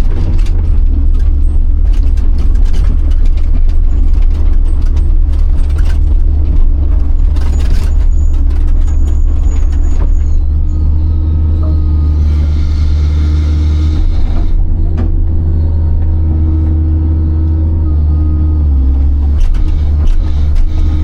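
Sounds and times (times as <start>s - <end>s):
excavator diesel engine rumble: 0.0s - 21.0s
thin squeal: 7.4s - 16.6s
machine clunks and knocks: 14.1s - 16.9s.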